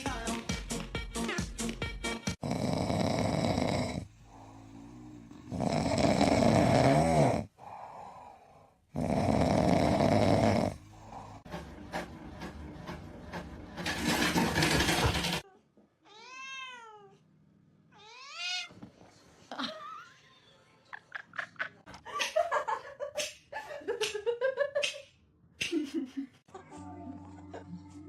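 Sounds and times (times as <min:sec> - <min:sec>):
cat meowing: 0:16.0 - 0:17.2, 0:17.9 - 0:18.7.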